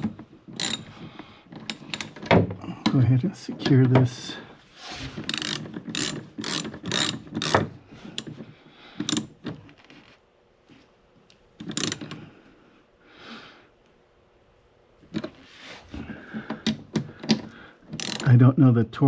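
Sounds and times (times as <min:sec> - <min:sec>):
ratchet wrench clicking: 0:00.6 - 0:00.9, 0:05.3 - 0:07.6, 0:11.6 - 0:12.0, 0:18.0 - 0:18.3.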